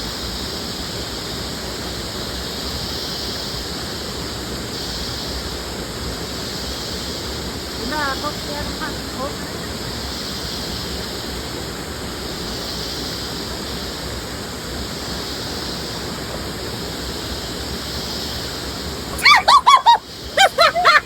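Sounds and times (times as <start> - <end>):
waterfall rushing: 18.5 - 21.0.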